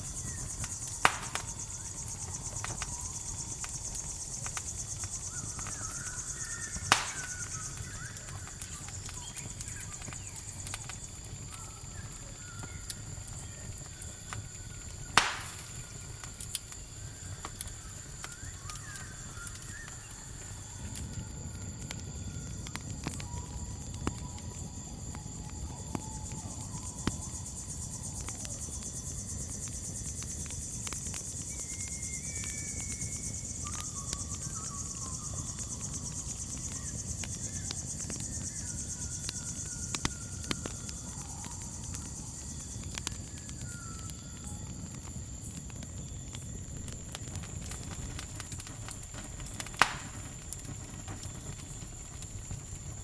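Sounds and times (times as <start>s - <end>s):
whistled bird calls: 0.0s - 16.0s, 17.0s - 20.9s, 31.5s - 44.7s
campfire rumble: 0.0s - 53.0s
crickets chirring: 0.0s - 53.0s
fire crackling and popping: 0.0s - 53.0s.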